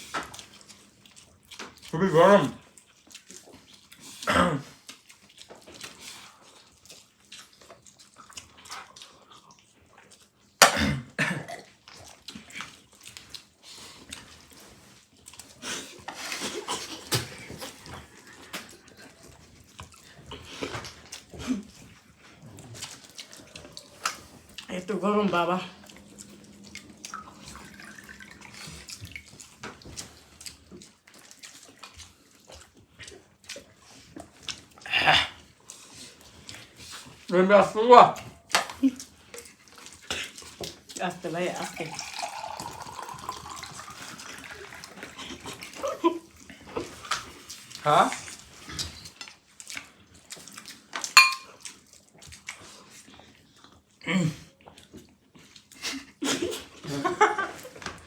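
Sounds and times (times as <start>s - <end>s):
wet chewing: 0.0s - 10.6s, 11.5s - 34.8s, 35.4s - 37.3s, 38.2s - 54.0s, 54.6s - 56.8s
plates and spoons clinking: 51.2s - 51.5s
sharp ringing clink: 51.2s - 51.5s.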